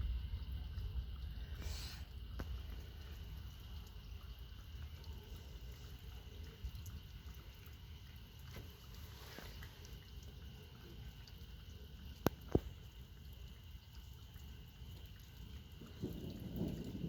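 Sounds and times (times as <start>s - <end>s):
low steady rumble: 0.0s - 17.0s
distant thunder rumbling: 15.1s - 17.0s.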